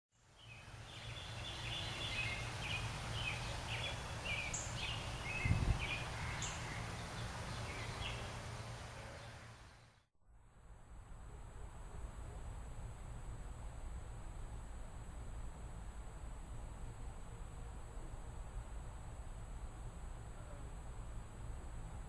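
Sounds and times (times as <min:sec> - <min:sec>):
birds chirping: 0:00.3 - 0:10.0
low outdoor rumble: 0:00.3 - 0:22.0.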